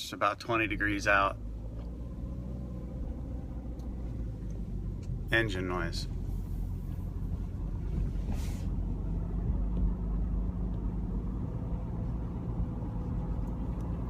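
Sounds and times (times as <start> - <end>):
car engine low drone: 0.0 - 14.0
brief rustle: 7.9 - 8.8.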